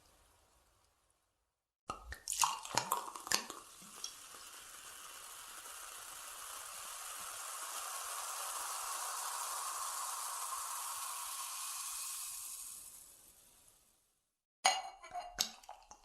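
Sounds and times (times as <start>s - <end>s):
drink fizzing hiss: 2.2s - 13.5s.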